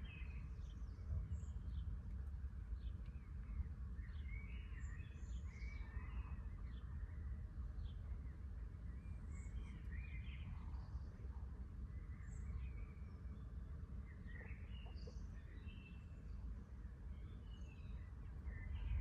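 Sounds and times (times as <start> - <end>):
low background rumble: 0.0 - 19.0
small birds chirping: 0.0 - 19.0.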